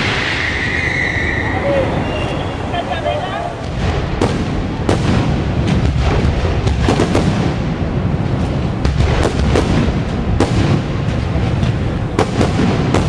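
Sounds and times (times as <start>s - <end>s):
fireworks bursting with sharp bangs: 0.0s - 13.0s
low rumble of booms: 3.6s - 13.0s.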